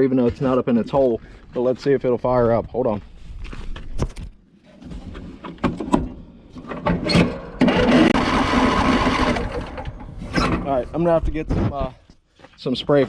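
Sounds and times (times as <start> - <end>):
starter cranking engine: 7.4 - 10.2.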